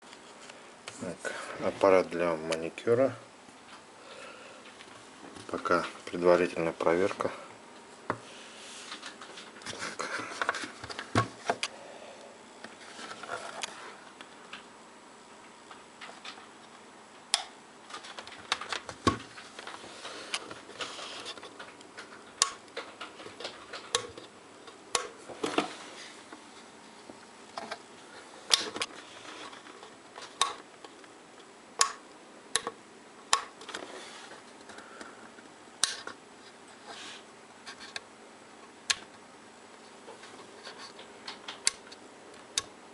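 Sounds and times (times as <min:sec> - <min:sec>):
sharp clicks and light knocks: 0:31.8 - 0:33.8.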